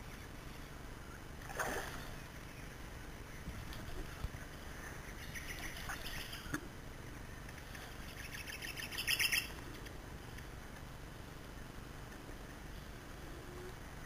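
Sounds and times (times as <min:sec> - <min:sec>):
birds chirping: 0:00.0 - 0:09.6
low background hiss: 0:00.0 - 0:14.0.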